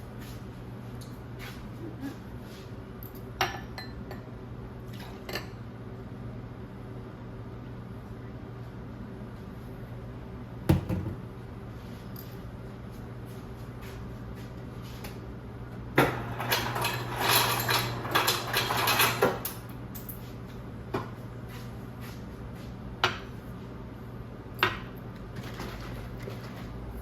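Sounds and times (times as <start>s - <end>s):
kitchenware clattering: 16.0s - 19.6s.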